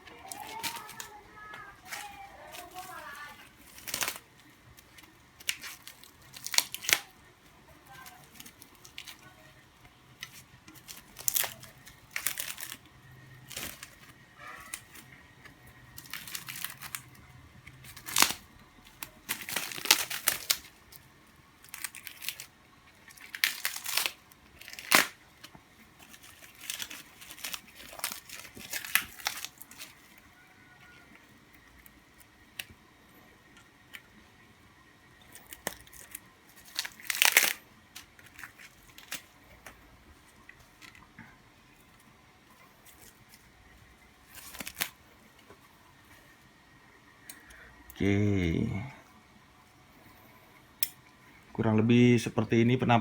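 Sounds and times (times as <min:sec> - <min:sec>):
packaging torn and crinkled: 0:00.1 - 0:32.8, 0:35.3 - 0:41.1, 0:44.2 - 0:45.2.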